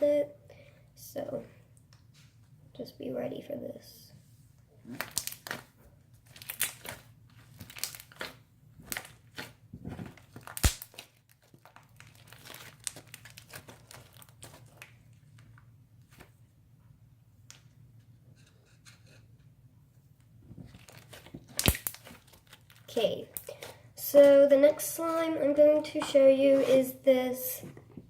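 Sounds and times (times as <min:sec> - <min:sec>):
slime crackling and popping: 0:04.9 - 0:15.5, 0:20.8 - 0:23.7.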